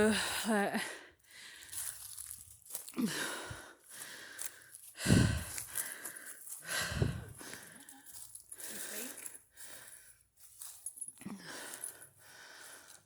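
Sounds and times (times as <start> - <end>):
footsteps through wet mud: 1.5 - 3.1
heavier footsteps: 5.0 - 8.4.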